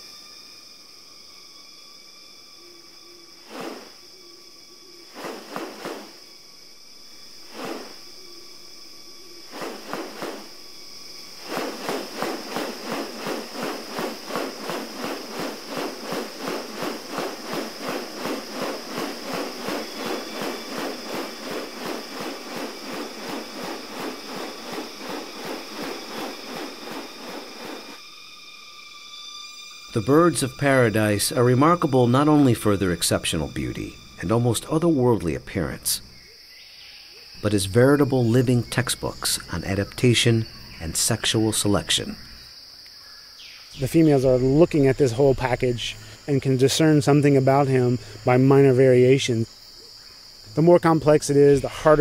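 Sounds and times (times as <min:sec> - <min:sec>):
high-pitched insect drone: 0:00.0 - 0:52.0
rhythmic pulsing sounds: 0:11.3 - 0:28.0.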